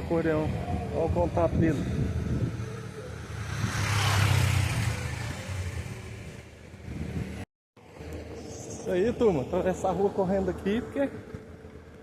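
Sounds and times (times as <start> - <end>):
car passing by: 1.7 - 10.2.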